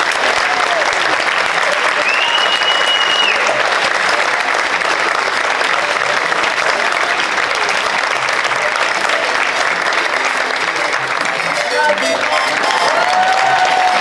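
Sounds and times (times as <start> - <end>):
audience applauding: 0.0 - 14.0
high whistle: 2.0 - 3.5.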